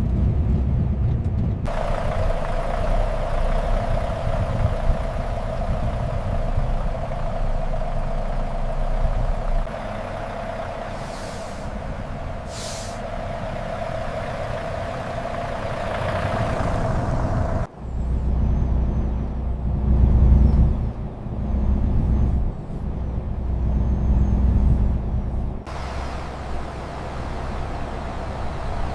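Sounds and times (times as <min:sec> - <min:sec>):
heavy truck engine running: 0:00.0 - 0:28.9
air brake hisses: 0:10.9 - 0:13.2.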